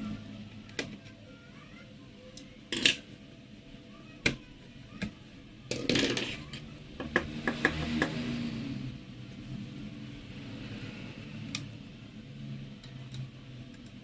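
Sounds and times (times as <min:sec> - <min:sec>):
plastic parts scraping: 0:05.7 - 0:06.6.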